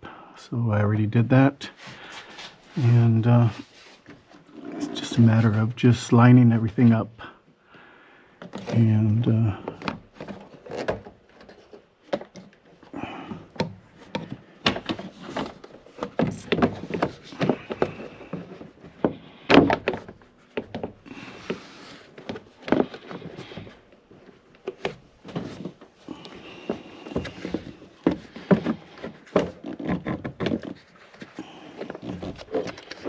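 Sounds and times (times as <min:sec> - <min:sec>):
plastic trim knocks and scrapes: 0:13.5 - 0:33.0.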